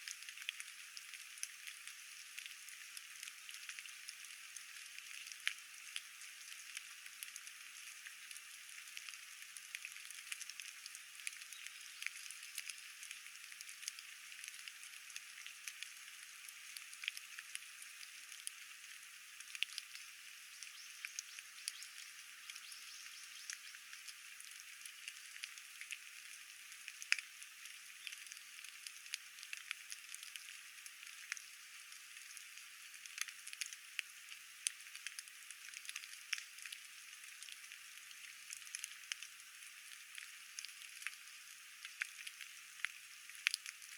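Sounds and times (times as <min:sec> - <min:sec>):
raindrops ticking: 0:00.0 - 0:17.6, 0:19.4 - 0:31.5, 0:40.1 - 0:43.9
rain hiss: 0:00.0 - 0:43.9.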